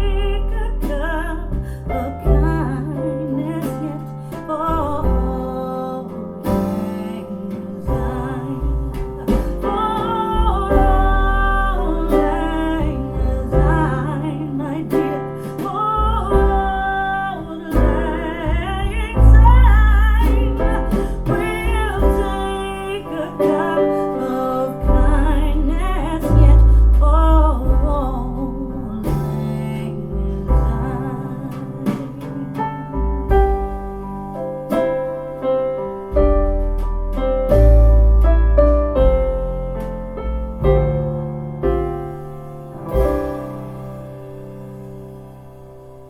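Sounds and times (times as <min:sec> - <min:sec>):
deep bass notes: 0:00.0 - 0:46.0
guitar: 0:00.0 - 0:46.0.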